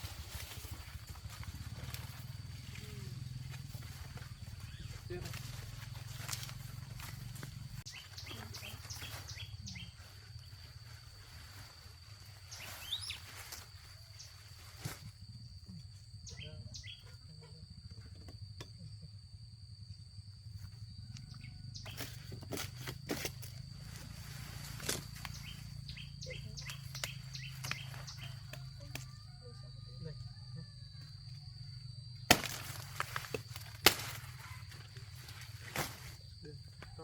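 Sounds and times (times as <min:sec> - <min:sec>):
insect drone: 0:00.0 - 0:37.0
bird chirps: 0:07.9 - 0:10.1, 0:12.4 - 0:13.6, 0:16.2 - 0:17.2, 0:21.3 - 0:22.4, 0:25.1 - 0:28.7.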